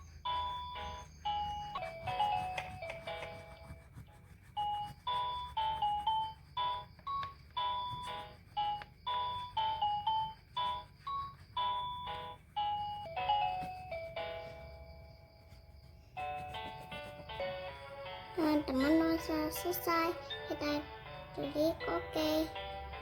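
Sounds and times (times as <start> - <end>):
electronic toy beeping melody: 0.0 - 3.7, 4.6 - 15.4.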